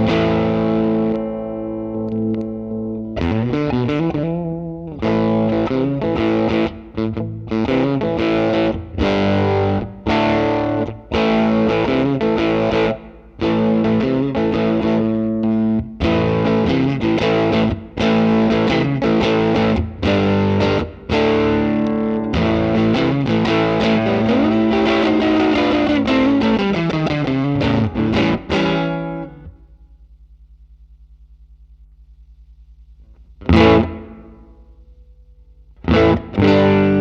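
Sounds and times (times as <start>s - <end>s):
distorted electric guitar: 0.0s - 29.9s, 32.8s - 37.0s
low steady hum: 0.0s - 37.0s.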